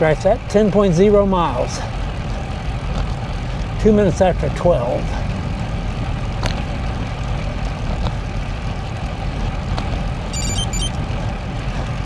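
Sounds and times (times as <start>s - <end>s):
wind and road noise rumble: 0.0s - 12.0s
high chirps: 10.4s - 10.9s.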